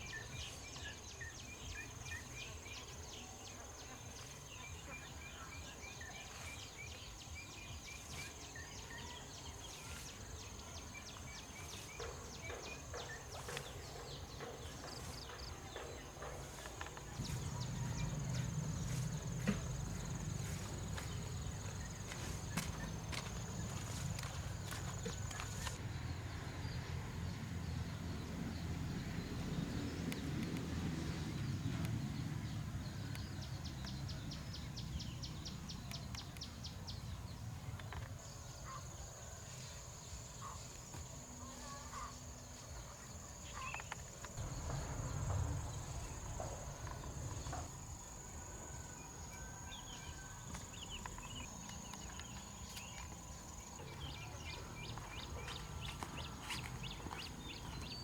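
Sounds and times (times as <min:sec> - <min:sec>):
low rumble: 0:44.4 - 0:48.7.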